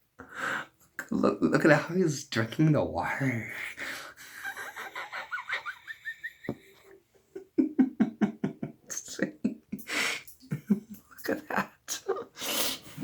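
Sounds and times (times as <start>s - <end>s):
person laughing: 4.2s - 11.6s.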